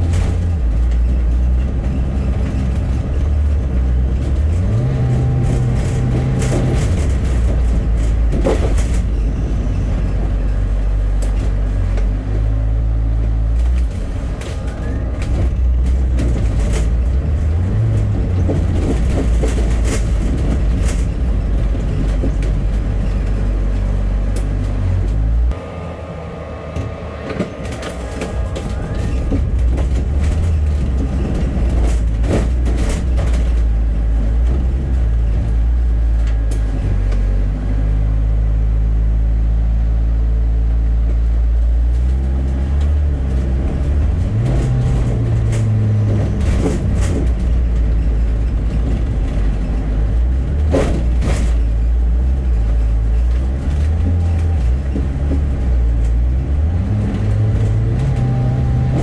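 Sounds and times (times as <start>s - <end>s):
knocks and rattles: 0.0s - 25.6s, 26.8s - 37.9s, 41.0s - 59.0s
bus engine droning: 0.0s - 59.0s.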